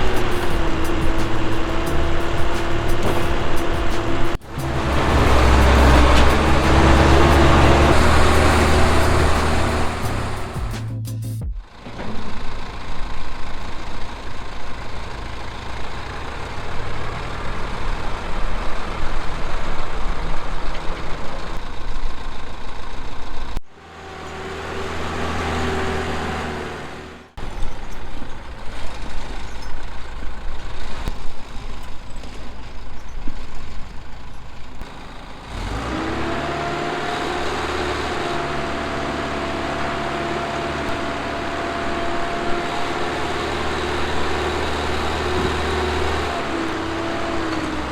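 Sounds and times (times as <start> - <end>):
machinery whine: 0.0 - 10.9
heavy diesel machinery running: 0.0 - 47.9.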